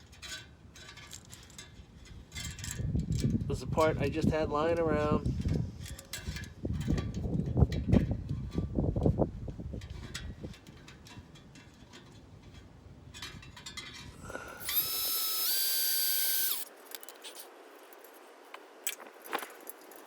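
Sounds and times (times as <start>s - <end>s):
power driver motor whine: 14.2s - 16.7s.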